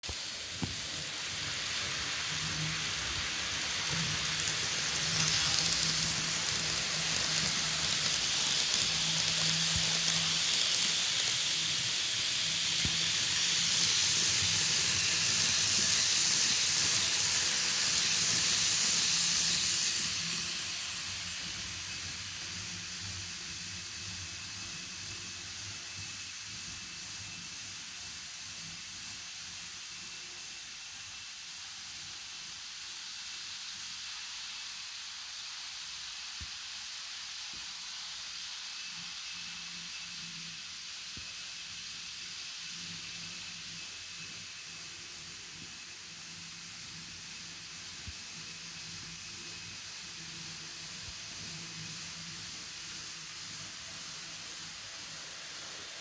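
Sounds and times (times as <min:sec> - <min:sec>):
model trains rattling: 0:00.0 - 0:25.0.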